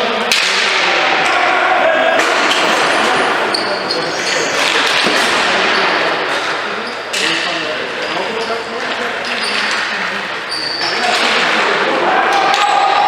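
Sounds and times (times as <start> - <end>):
indistinct shouting voices: 0.8 - 5.5, 11.4 - 13.0.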